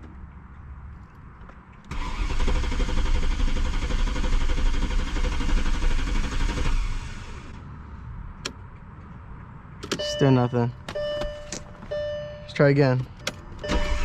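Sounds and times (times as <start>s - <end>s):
starter motor cranking engine: 1.9s - 7.4s, 13.7s - 14.0s.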